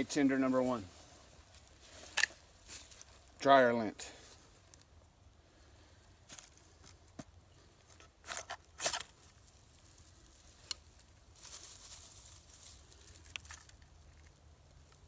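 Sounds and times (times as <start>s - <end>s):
knife scraping fire steel: 8.0s - 9.2s.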